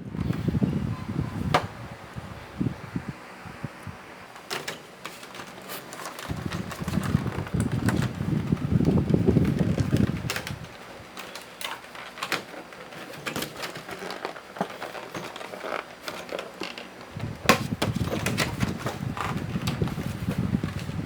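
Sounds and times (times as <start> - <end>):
cardboard and plastic packaging rustling: 4.2 - 21.0.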